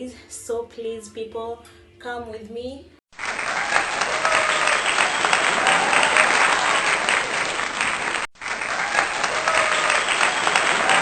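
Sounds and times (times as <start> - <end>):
crowd clapping and cheering: 3.1 - 11.0.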